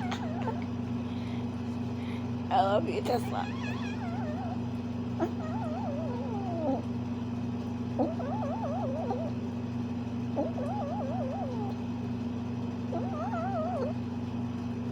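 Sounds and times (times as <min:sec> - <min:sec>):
cat warbling calls: 0:00.0 - 0:00.8, 0:03.1 - 0:06.9, 0:08.0 - 0:09.4, 0:10.4 - 0:11.8, 0:12.9 - 0:14.0
steady low hum: 0:00.0 - 0:14.9.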